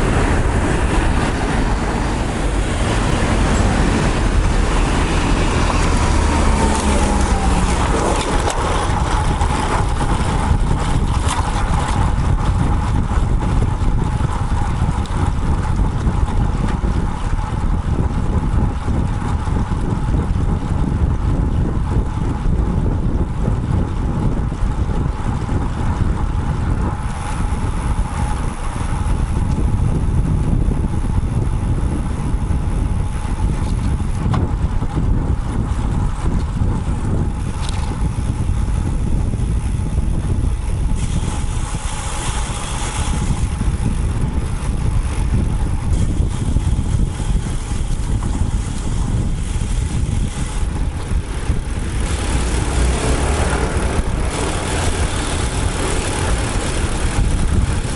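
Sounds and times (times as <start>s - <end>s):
passing road traffic hiss: 0.0s - 10.6s, 40.7s - 44.0s, 45.9s - 57.9s
wind buffeting microphone: 0.0s - 57.9s.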